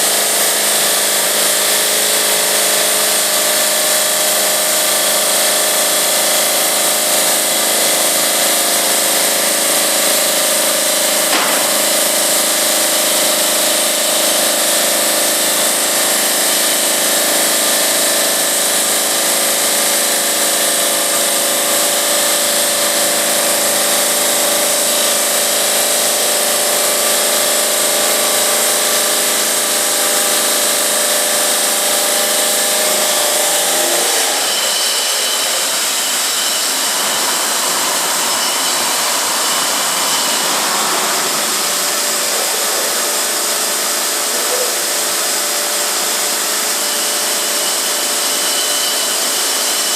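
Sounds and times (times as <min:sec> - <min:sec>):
saw machine whine: 0:00.0 - 0:49.9.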